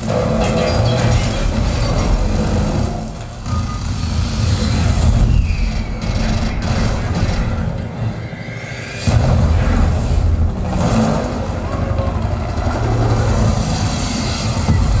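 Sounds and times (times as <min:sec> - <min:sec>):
rumbling film sound effects: 0:00.0 - 0:15.0
heavy deep bass: 0:09.1 - 0:15.0.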